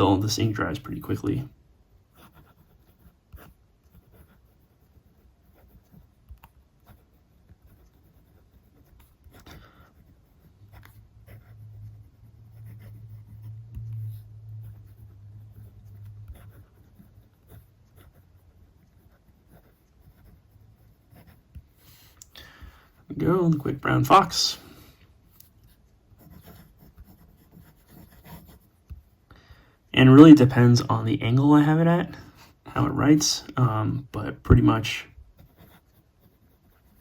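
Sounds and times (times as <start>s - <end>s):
pen nib scratching paper: 2.1s - 22.2s, 25.3s - 29.2s, 35.3s - 37.0s.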